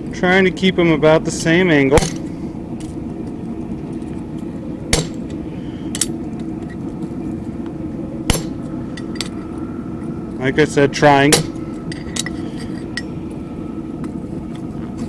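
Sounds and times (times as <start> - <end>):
background hum: 0.0 - 15.0.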